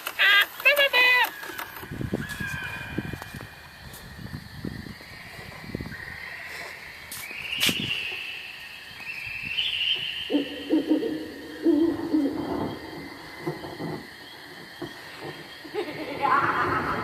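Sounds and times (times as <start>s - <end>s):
owl hooting: 1.0s - 15.3s
high whistling tone: 1.4s - 13.4s.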